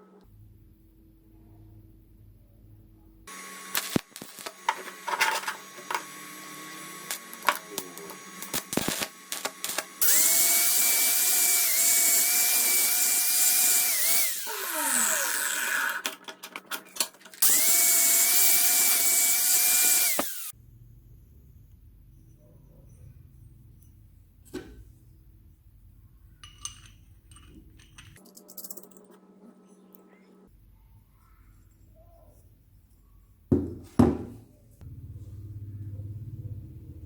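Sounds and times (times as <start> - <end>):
electric drill running: 3.3 - 16.1, 17.4 - 20.5.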